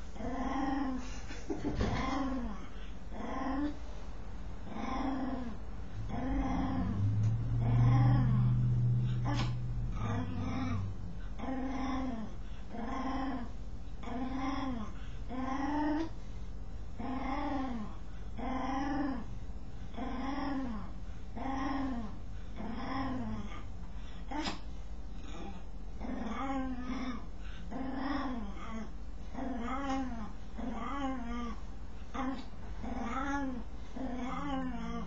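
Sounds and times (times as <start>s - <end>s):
dog groaning calls: 6.1s - 12.3s.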